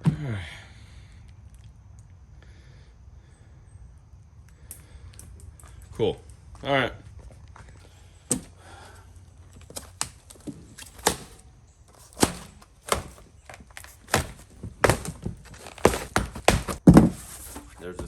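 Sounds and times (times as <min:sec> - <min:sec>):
packing material thunks and crackles: 0:08.3 - 0:18.0.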